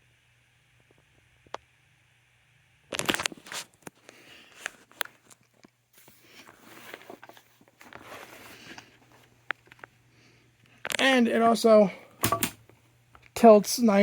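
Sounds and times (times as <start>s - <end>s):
sharp clicks and knocks: 12.2s - 12.6s.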